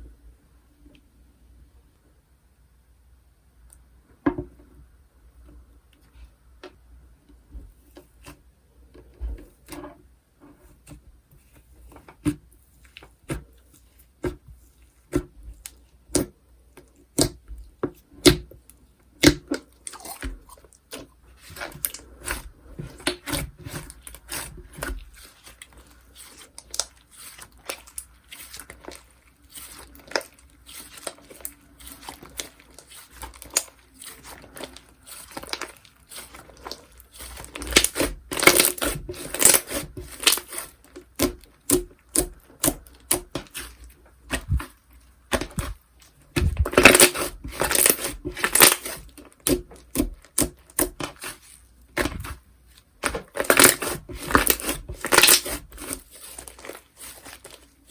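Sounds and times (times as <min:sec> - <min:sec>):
slime popping and squishing: 0:19.2 - 0:52.4, 0:53.0 - 0:57.7.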